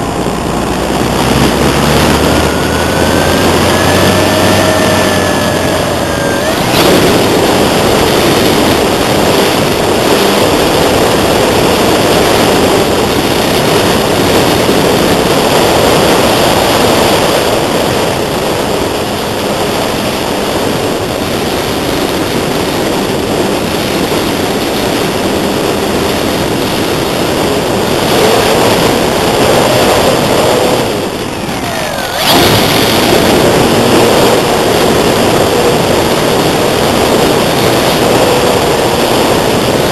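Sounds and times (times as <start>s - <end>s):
electric motor whine: 0.0s - 39.9s
wind buffeting microphone: 0.0s - 39.9s.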